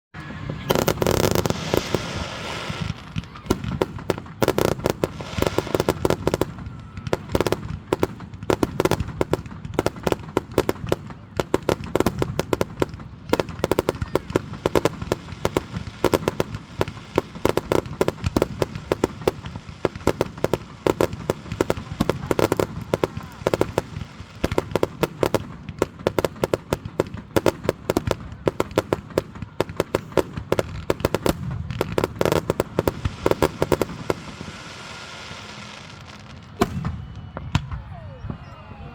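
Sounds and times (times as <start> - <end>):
fireworks bangs and crackling: 0.2 - 38.8.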